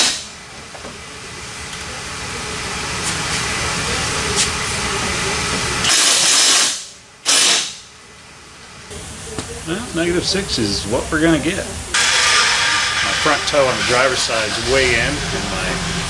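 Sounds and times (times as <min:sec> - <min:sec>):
pneumatic tool whirring: 0:05.8 - 0:07.8, 0:11.9 - 0:16.0
air hiss blasts: 0:08.9 - 0:16.0.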